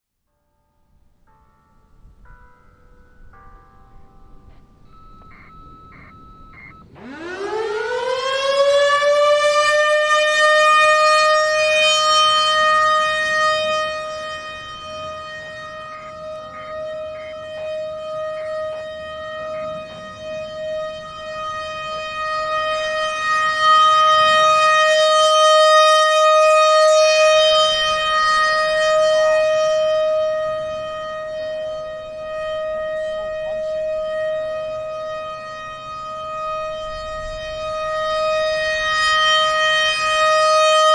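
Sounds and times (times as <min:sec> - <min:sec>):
warning siren wailing: 0:04.3 - 0:40.9.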